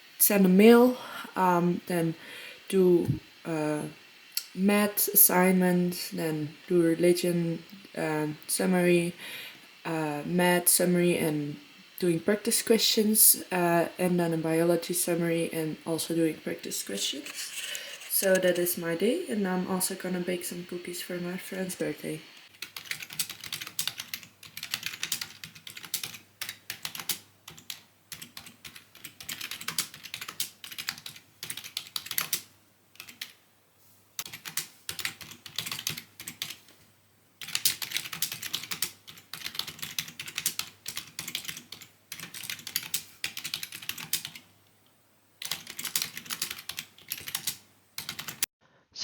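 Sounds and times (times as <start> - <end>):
keyboard typing: 22.6 - 32.4, 37.4 - 44.4, 45.4 - 48.5.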